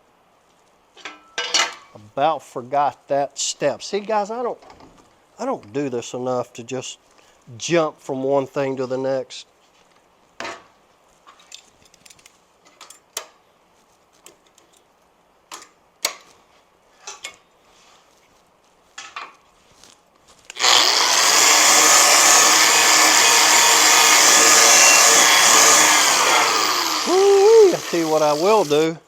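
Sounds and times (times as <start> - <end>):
angle grinder grinding steel: 20.5 - 29.0.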